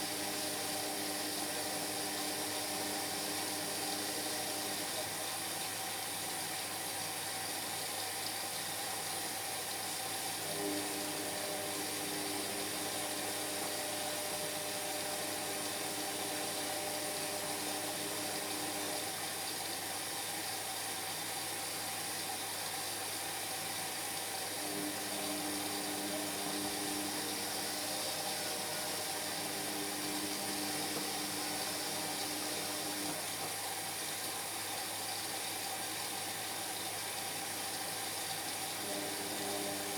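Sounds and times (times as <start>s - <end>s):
washing machine drum motor humming: 0.0s - 5.7s, 10.4s - 20.1s, 23.8s - 34.2s, 36.8s - 39.9s.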